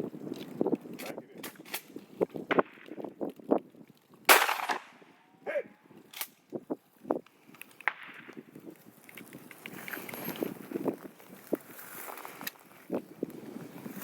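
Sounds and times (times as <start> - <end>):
shotgun shot: 4.3 - 5.0.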